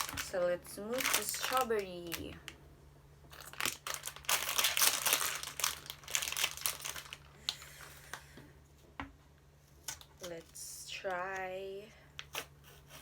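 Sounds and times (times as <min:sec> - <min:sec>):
packaging crinkling: 0:00.0 - 0:02.6, 0:03.3 - 0:08.3.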